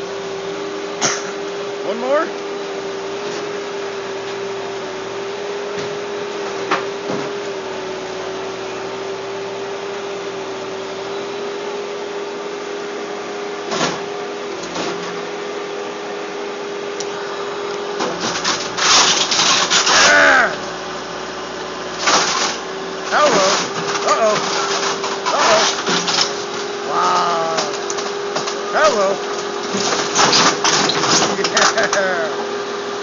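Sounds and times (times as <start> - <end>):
demolition machinery whining: 0.0 - 33.0
loud crashing and cracking: 18.0 - 20.3, 22.0 - 26.7, 29.4 - 32.0.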